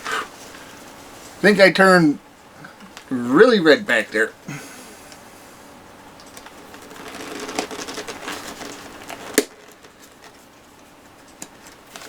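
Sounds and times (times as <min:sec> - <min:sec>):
rustling handling noise: 0:02.6 - 0:12.0.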